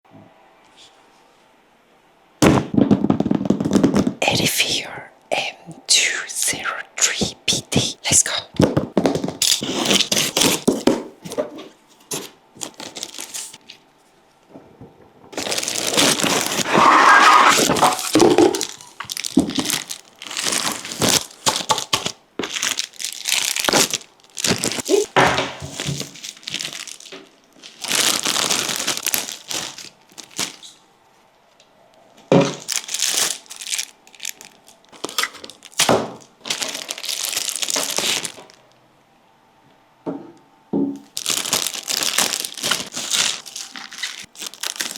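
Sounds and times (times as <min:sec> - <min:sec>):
packaging crinkling and tearing: 0:09.1 - 0:11.0, 0:12.1 - 0:13.8, 0:15.4 - 0:30.8, 0:32.4 - 0:38.7, 0:41.1 - 0:44.9.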